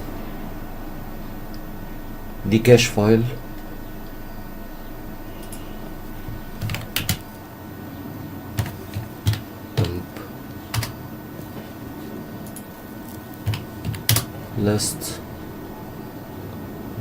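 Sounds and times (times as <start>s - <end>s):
faint room hum: 0.0s - 17.0s
computer keyboard typing: 6.6s - 7.4s, 8.6s - 11.0s, 13.4s - 14.4s.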